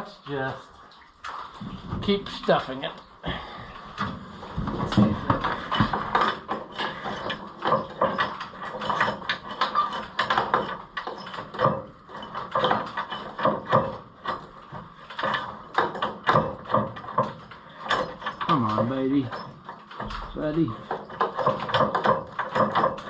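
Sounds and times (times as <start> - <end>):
steel chain clinking and rattling: 3.8 - 23.0.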